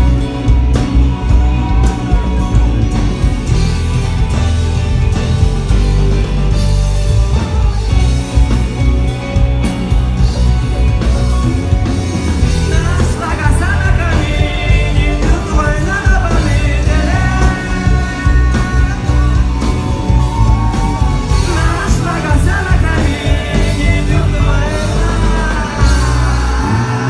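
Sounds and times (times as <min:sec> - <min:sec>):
rock song with guitar: 0:00.0 - 0:27.0
person singing: 0:07.1 - 0:27.0.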